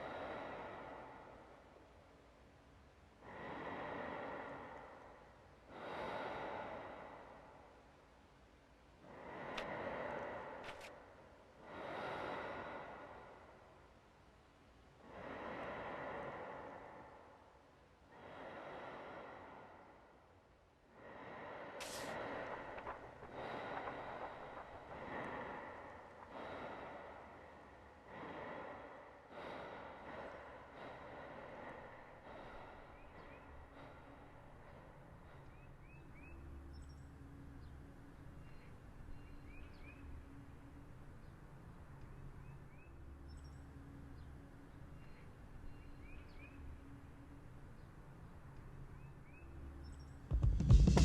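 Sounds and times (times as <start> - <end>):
heavy breathing: 0.0 - 2.4, 3.0 - 8.1, 9.0 - 38.2
faint high hum: 0.0 - 50.4
bird chirps: 32.8 - 40.4, 41.2 - 47.0.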